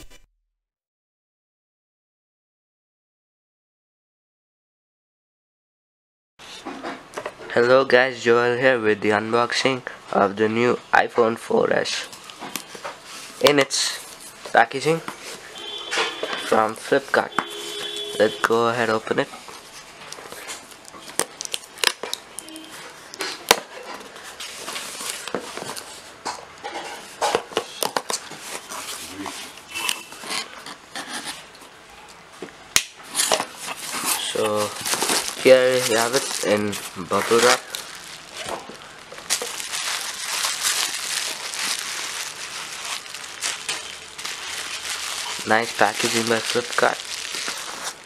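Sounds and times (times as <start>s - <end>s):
bubble wrap crinkling: 12.0s - 26.2s, 27.0s - 32.2s, 32.9s - 48.0s
packaging rustling and tearing: 12.0s - 26.2s, 27.0s - 31.7s, 33.0s - 48.0s
sharp snaps and clicks: 32.8s - 33.0s.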